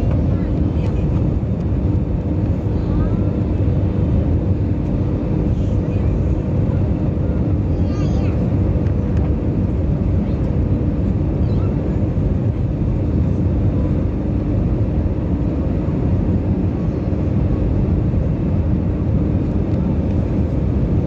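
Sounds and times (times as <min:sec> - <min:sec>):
aircraft cabin engine rumble: 0:00.0 - 0:21.0.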